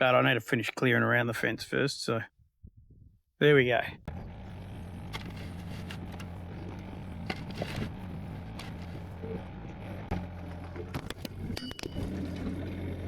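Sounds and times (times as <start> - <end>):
engine idling: 4.1 - 13.0.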